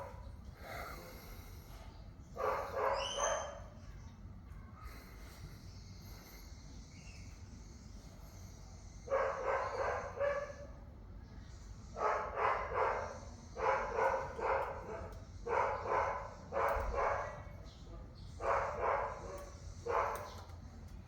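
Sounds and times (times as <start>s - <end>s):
dog barking: 2.4s - 3.8s, 9.1s - 10.8s, 12.0s - 17.5s, 18.4s - 20.4s.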